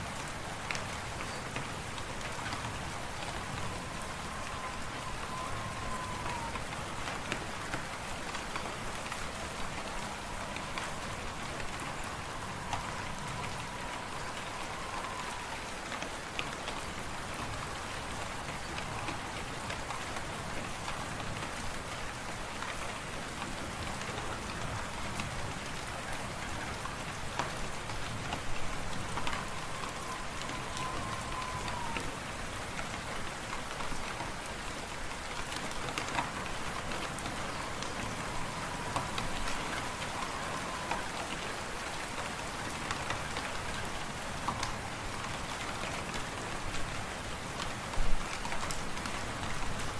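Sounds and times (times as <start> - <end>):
faint high whistle: 3.4 - 6.6, 10.8 - 15.6, 29.2 - 32.1.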